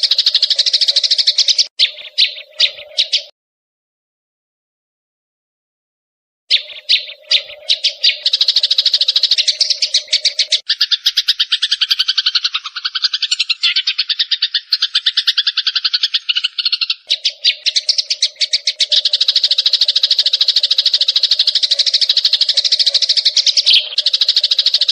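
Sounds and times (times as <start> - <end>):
sparrows chirping: 0.0 - 3.3, 6.5 - 24.9.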